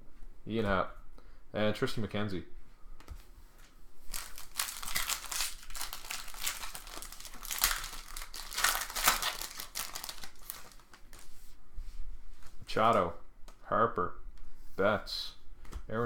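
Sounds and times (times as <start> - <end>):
foil wrapper crinkling and tearing: 4.1 - 11.2.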